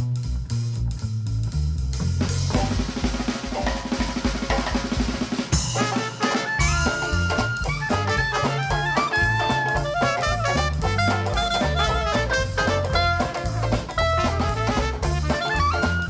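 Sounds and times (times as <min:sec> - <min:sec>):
string bass: 0:00.0 - 0:16.0
snare drum rattling: 0:02.3 - 0:16.0
horns holding notes: 0:05.2 - 0:16.0.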